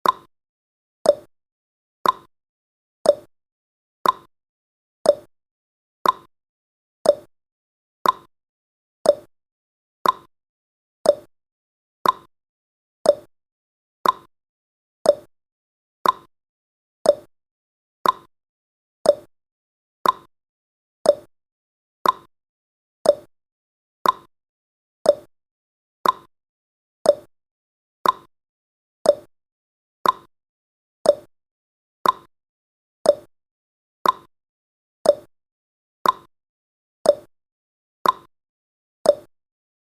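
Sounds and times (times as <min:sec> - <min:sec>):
timer ticking: 0:00.0 - 0:00.3, 0:01.0 - 0:01.3, 0:02.0 - 0:02.3, 0:03.0 - 0:03.3, 0:04.0 - 0:04.3, 0:05.1 - 0:05.3, 0:06.0 - 0:06.3, 0:07.0 - 0:07.3, 0:08.0 - 0:08.3, 0:09.0 - 0:09.3, 0:10.0 - 0:10.3, 0:11.0 - 0:11.3, 0:12.0 - 0:12.3, 0:13.0 - 0:13.3, 0:14.0 - 0:14.3, 0:15.0 - 0:15.3, 0:16.0 - 0:16.3, 0:17.0 - 0:17.3, 0:18.0 - 0:18.3, 0:19.0 - 0:19.3, 0:20.0 - 0:20.3, 0:21.0 - 0:21.3, 0:22.0 - 0:22.3, 0:23.0 - 0:23.3, 0:24.0 - 0:24.3, 0:25.0 - 0:25.3, 0:26.0 - 0:26.3, 0:27.0 - 0:27.3, 0:28.0 - 0:28.3, 0:29.0 - 0:29.3, 0:30.0 - 0:30.3, 0:31.0 - 0:31.3, 0:32.0 - 0:32.3, 0:33.0 - 0:33.3, 0:34.0 - 0:34.3, 0:35.0 - 0:35.3, 0:36.0 - 0:36.3, 0:37.0 - 0:37.3, 0:38.0 - 0:38.3, 0:39.1 - 0:39.3.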